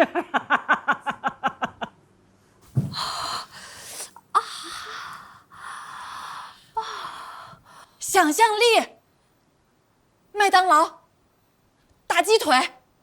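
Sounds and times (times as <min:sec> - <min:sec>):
person gasping: 0:02.8 - 0:08.0.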